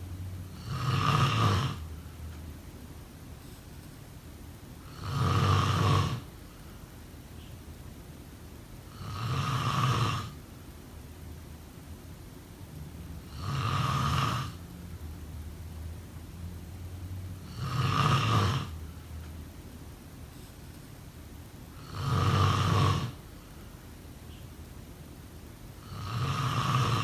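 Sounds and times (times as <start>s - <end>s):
person snoring: 0.5s - 1.9s, 4.8s - 6.3s, 8.9s - 10.4s, 13.3s - 14.6s, 17.4s - 18.8s, 21.8s - 23.2s, 25.8s - 27.0s.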